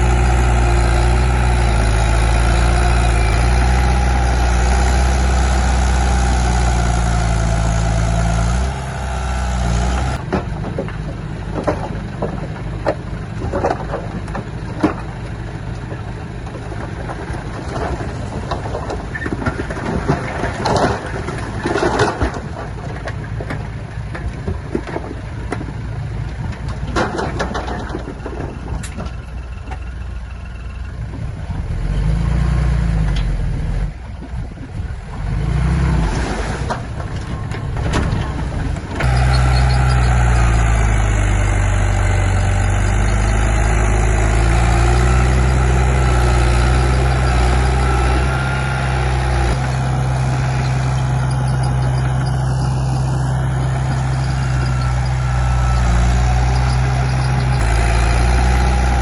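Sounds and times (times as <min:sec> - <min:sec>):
diesel machinery engine: 0:00.0 - 0:59.0.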